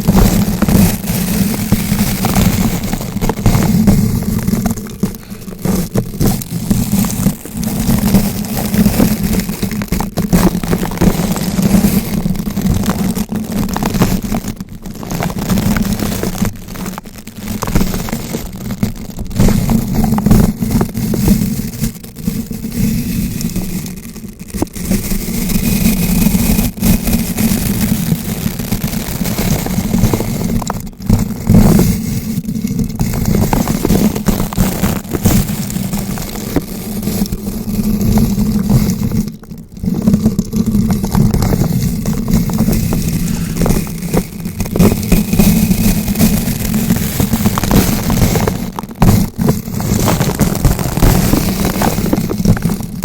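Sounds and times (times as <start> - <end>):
brush scratching on microphone: 40.8 - 52.8.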